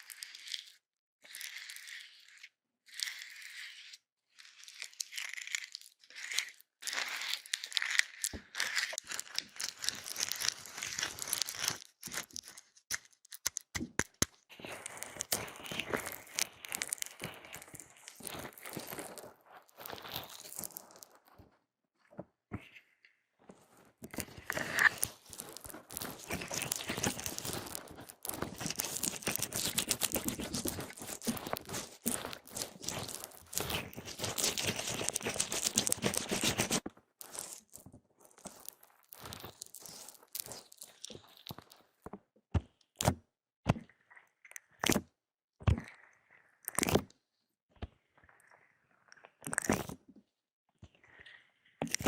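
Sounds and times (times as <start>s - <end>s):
crunching crisp food: 0.0s - 3.6s, 4.3s - 21.4s, 24.0s - 41.9s, 46.7s - 47.0s, 49.1s - 50.0s
crinkling and rustling: 5.7s - 22.8s, 23.4s - 42.2s.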